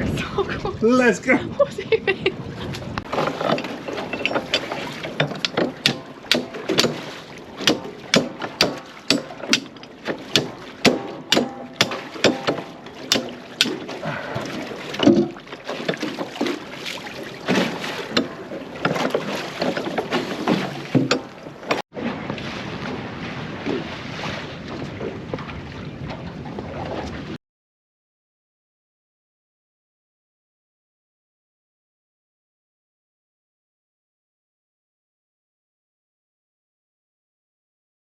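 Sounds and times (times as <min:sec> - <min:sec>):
rushing water: 0:00.0 - 0:27.4
wind: 0:00.0 - 0:27.4
sharp knocks and slaps: 0:04.4 - 0:13.9, 0:17.5 - 0:21.8.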